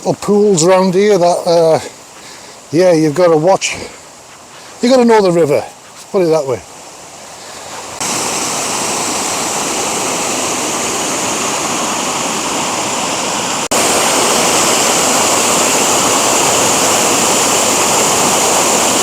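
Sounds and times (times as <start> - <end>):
waterfall and river rushing: 0.0 - 19.0.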